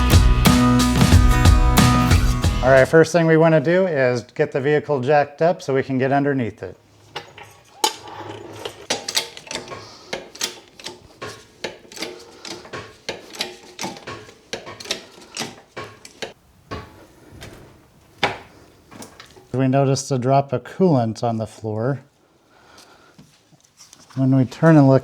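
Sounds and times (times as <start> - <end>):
car jack clicking and clanking: 7.0 - 17.6.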